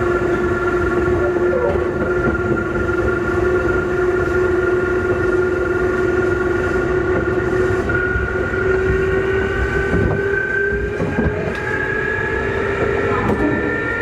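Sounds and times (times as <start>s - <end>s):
train traction motors whining: 0.0s - 14.0s
wheels knocking on track: 1.5s - 3.2s.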